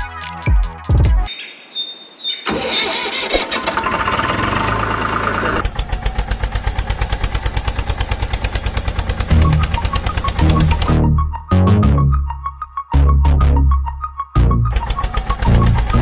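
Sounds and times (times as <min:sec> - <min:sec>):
engine cranking: 0:02.5 - 0:10.9, 0:14.7 - 0:16.0
engine idling: 0:03.0 - 0:10.9.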